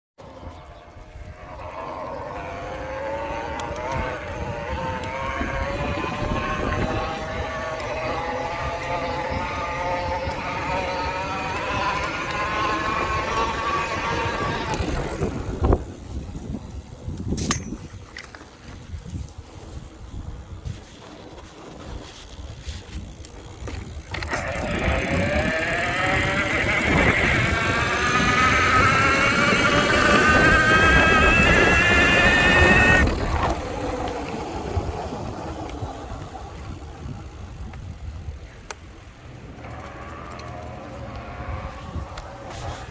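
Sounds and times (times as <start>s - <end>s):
electric bike motor whine: 0.2s - 42.9s
low rumbling: 23.8s - 42.9s.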